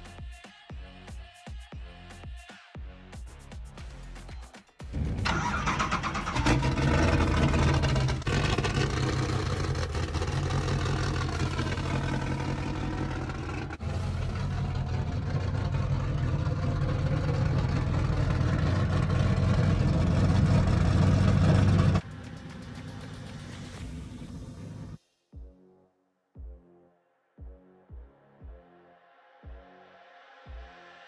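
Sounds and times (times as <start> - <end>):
engine running hard: 4.9 - 25.0.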